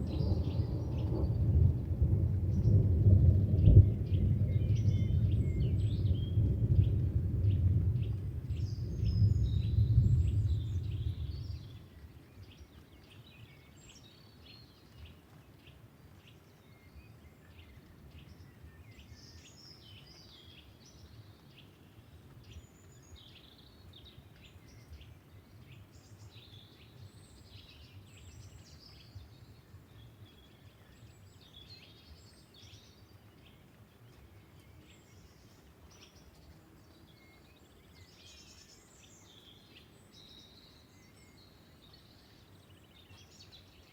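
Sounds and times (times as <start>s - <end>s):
thunder rumble: 0.0s - 11.8s
light rain: 0.0s - 43.9s.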